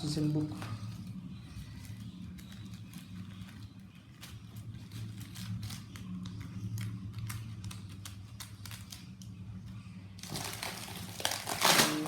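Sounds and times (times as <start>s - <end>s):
packaging rustling and crinkling: 0.4s - 9.3s, 10.2s - 12.0s.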